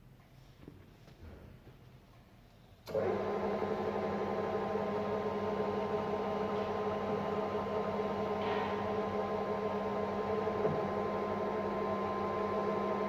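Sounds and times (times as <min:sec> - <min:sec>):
pillar drill motor humming: 0:02.9 - 0:13.0.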